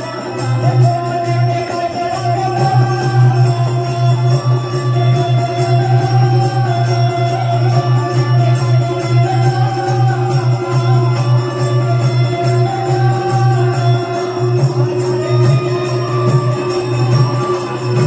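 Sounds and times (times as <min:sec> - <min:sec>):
held melody notes: 0:00.0 - 0:18.0
jingling percussion rhythm: 0:00.0 - 0:18.0.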